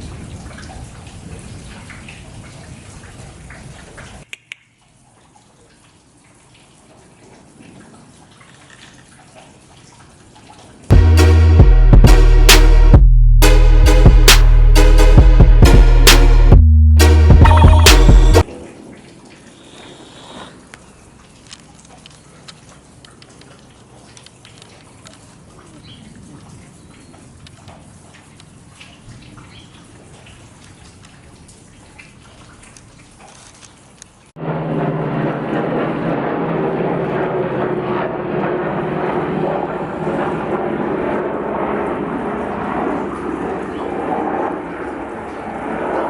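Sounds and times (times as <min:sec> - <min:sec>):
rain falling: 0:00.0 - 0:04.3
rain pattering and dripping: 0:00.0 - 0:10.9, 0:18.4 - 0:34.4
loud music with deep bass: 0:10.9 - 0:18.4.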